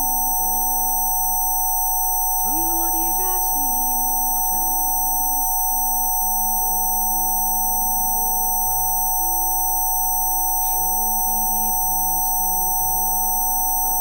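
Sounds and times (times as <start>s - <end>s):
slow ambient music: 10.2s - 13.4s.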